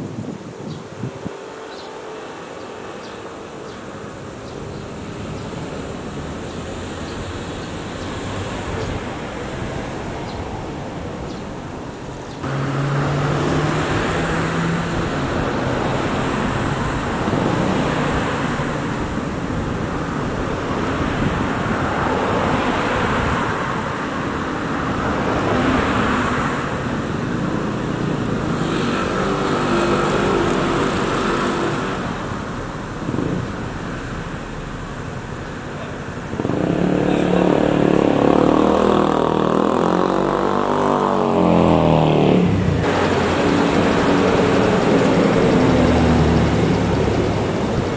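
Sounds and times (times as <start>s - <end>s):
vehicles driving past: 0.1s - 47.9s
high-pitched engine: 12.4s - 47.9s.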